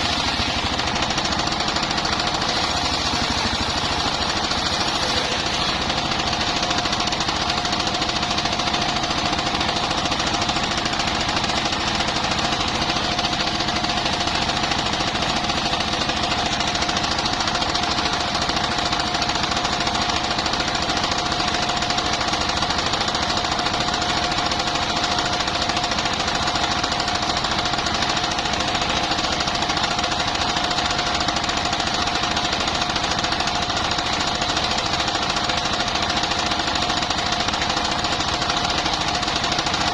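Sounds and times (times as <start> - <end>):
saw blade high whine: 0.0 - 8.1
sawmill engine running: 0.0 - 39.9.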